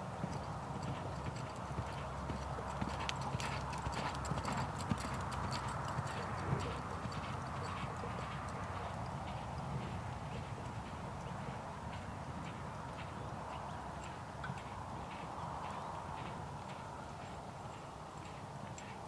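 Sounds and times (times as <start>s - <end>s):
horse hooves clip-clopping: 0.0s - 19.0s.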